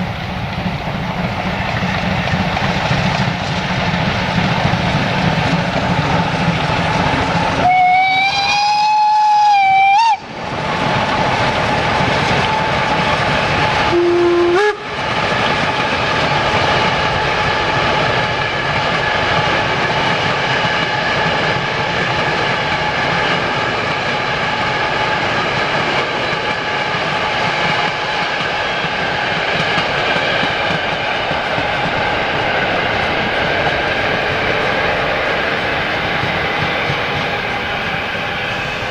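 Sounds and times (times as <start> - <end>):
steam train running: 0.0 - 38.9
steam whistle blowing: 7.6 - 10.3, 13.9 - 14.9.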